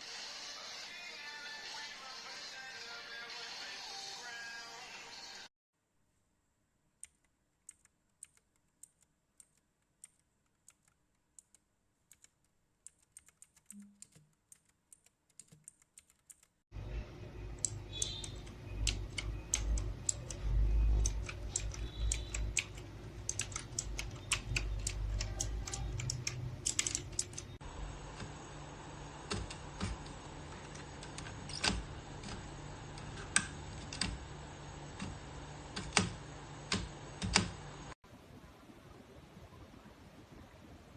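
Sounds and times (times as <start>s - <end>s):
mechanical keyboard typing: 7.0s - 16.6s, 17.6s - 28.4s, 29.2s - 37.6s.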